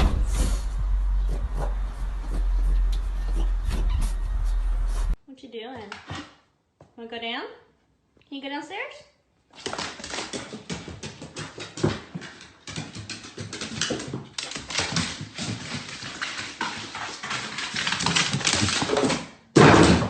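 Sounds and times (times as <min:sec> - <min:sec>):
dog claws clicking on hard floor: 0:09.5 - 0:19.3.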